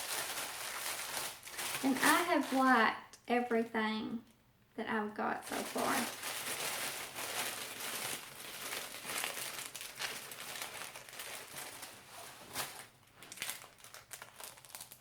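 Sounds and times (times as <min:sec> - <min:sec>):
packaging crinkling: 0:00.0 - 0:02.8, 0:05.5 - 0:15.0.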